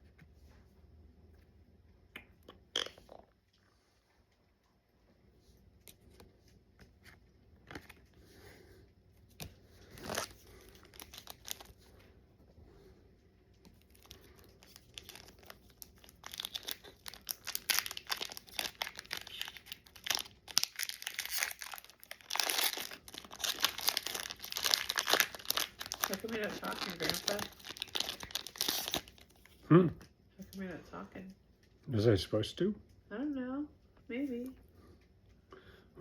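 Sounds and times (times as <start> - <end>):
foil wrapper crinkling and tearing: 9.3 - 12.0, 13.7 - 29.6.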